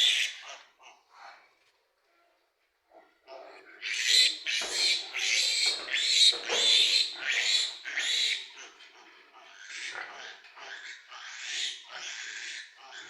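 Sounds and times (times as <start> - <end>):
piglet squealing: 0.0 - 0.7, 3.8 - 8.5.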